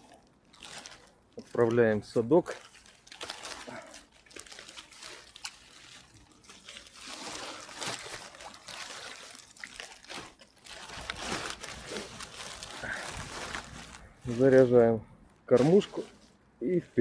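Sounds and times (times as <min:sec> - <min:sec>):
water trickling and splashing: 0:05.0 - 0:10.1.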